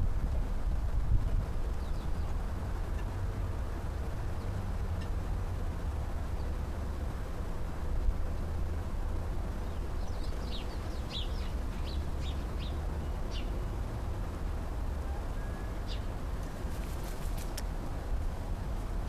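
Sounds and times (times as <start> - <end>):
steady low rumble: 0.0 - 19.0
small birds chirping: 1.7 - 3.2, 9.5 - 13.8, 15.1 - 17.7.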